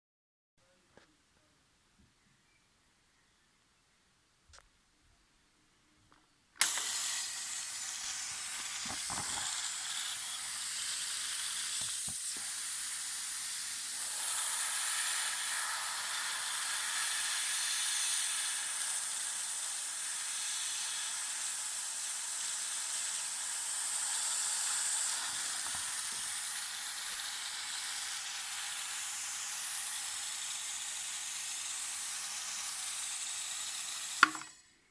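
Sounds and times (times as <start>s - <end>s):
compressed air hissing from nozzle: 6.6s - 34.4s.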